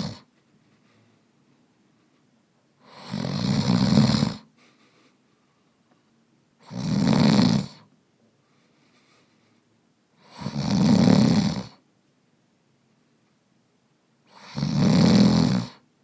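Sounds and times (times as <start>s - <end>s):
man snoring: 0.0s - 0.3s, 2.8s - 4.5s, 6.6s - 7.9s, 10.2s - 11.8s, 14.3s - 15.8s
faint breath: 0.2s - 2.4s, 4.4s - 6.1s, 8.3s - 9.8s.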